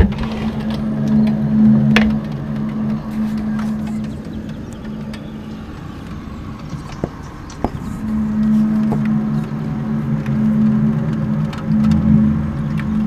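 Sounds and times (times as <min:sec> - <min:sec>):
low droning hum: 0:00.0 - 0:13.0.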